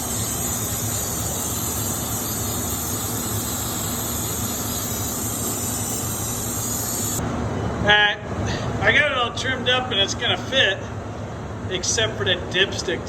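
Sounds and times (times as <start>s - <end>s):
aerosol spray hissing: 0.0s - 7.2s.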